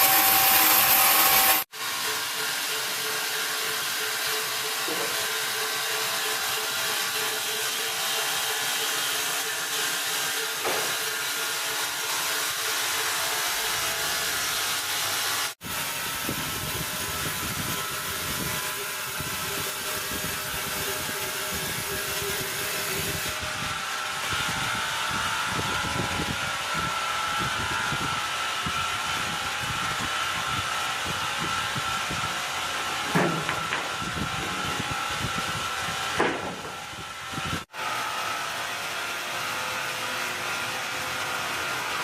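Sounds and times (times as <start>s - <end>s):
sawmill saw running: 0.0s - 42.0s
sharp knocks: 33.1s - 33.9s, 36.2s - 36.8s.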